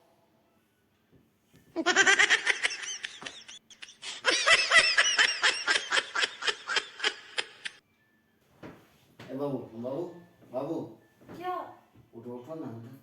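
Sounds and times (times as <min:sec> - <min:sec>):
high-pitched laughter: 0:01.8 - 0:07.8.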